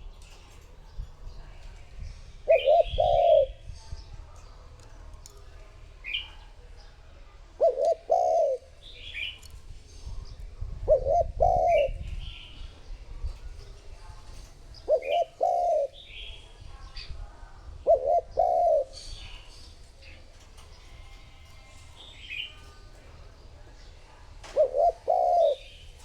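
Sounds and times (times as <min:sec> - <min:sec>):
small birds chirping: 0:00.0 - 0:26.0
dove cooing: 0:02.4 - 0:03.7, 0:07.4 - 0:09.5, 0:10.6 - 0:12.8, 0:14.2 - 0:16.4, 0:17.7 - 0:19.3, 0:20.4 - 0:26.0.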